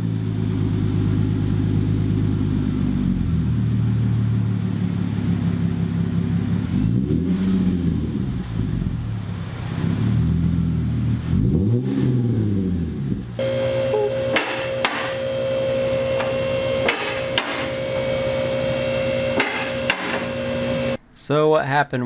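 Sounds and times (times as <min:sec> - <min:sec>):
car engine idling and revving: 0:00.0 - 0:21.0
steady mechanical hum: 0:13.1 - 0:21.0
sharp metallic clanks: 0:13.9 - 0:15.4, 0:16.0 - 0:20.7.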